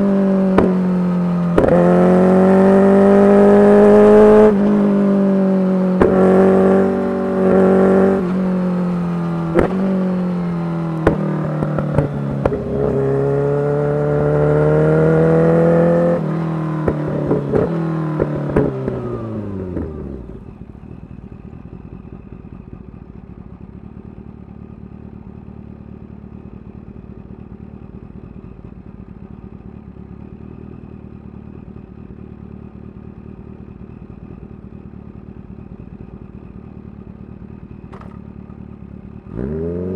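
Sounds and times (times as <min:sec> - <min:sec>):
motorcycle engine revving: 0:00.0 - 0:39.9
motorcycle engine idling: 0:04.6 - 0:15.6, 0:16.2 - 0:39.9
exhaust pops: 0:05.9 - 0:06.4, 0:09.5 - 0:09.9, 0:37.9 - 0:38.6.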